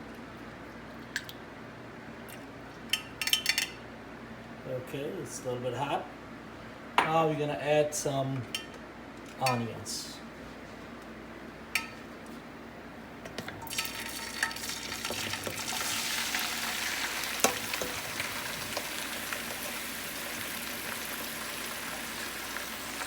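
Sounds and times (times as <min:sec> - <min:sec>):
onions sizzling in oil: 0:13.6 - 0:23.0.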